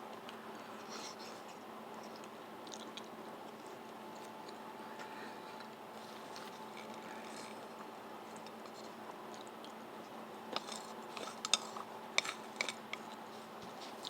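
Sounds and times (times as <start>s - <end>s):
faint steady hum: 0.0s - 14.0s
utensils clicking and scraping dish: 10.5s - 13.2s.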